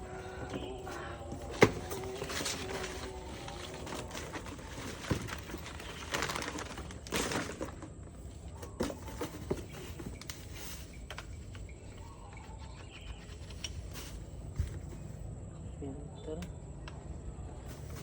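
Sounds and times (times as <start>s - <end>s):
packaging rustling: 1.3s - 8.0s.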